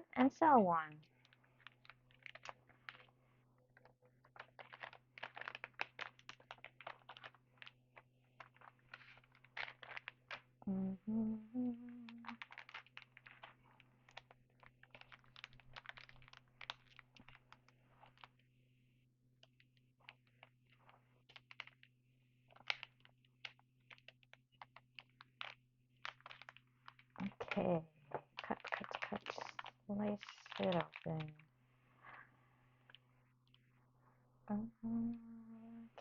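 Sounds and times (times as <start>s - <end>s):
cards clicking and tapping: 3.8s - 10.4s, 12.0s - 18.3s, 22.5s - 31.4s.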